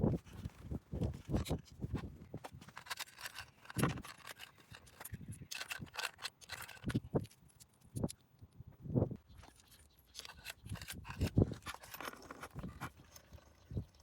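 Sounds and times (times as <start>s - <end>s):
scraping: 1.3s - 7.3s.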